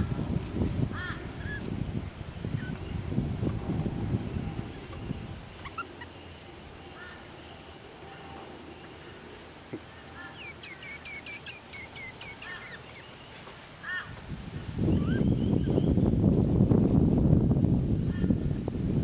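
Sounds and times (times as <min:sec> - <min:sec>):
steady high-pitched hiss: 0:00.0 - 0:19.0
baby bird begging calls: 0:05.0 - 0:06.1, 0:10.2 - 0:13.1, 0:14.9 - 0:15.7.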